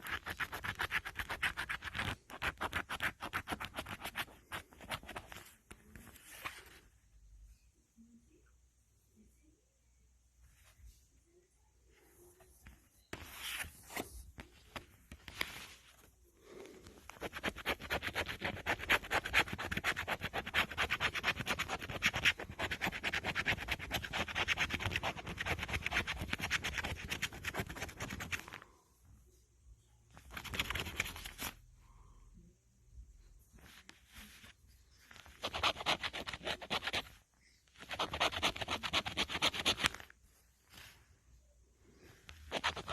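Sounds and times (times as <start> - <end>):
scratch-off ticket being scratched: 0.0 - 5.4, 17.1 - 28.5, 35.2 - 37.2, 37.8 - 40.1, 42.5 - 42.9.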